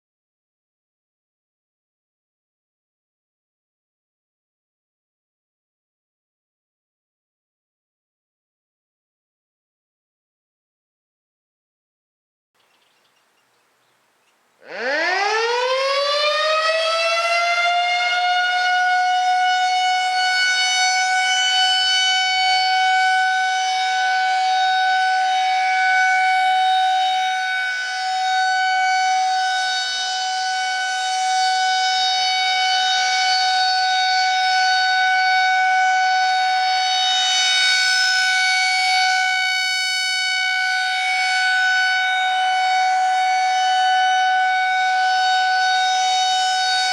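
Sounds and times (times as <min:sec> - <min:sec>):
mechanical warning siren: 0:13.1 - 0:46.9.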